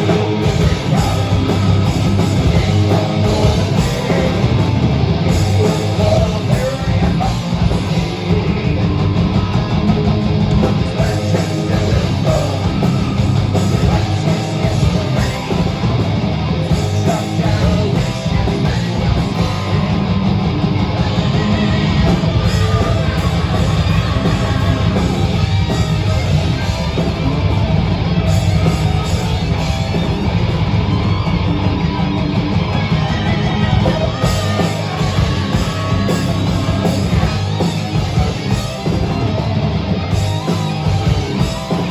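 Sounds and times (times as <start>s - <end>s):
person singing: 0.0s - 9.1s, 10.7s - 15.7s
band playing rock music: 0.0s - 41.9s.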